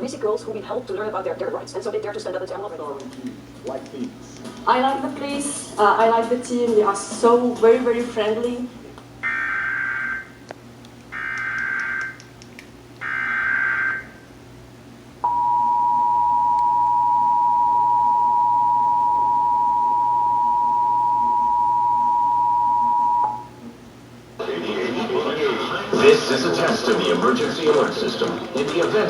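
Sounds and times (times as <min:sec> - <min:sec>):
two-tone attention signal: 0:15.2 - 0:23.6.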